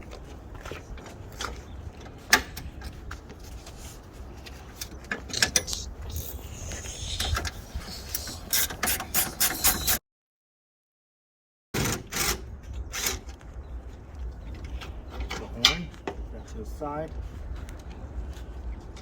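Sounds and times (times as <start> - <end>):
hand tools clicking and clattering: 8.0 - 10.0.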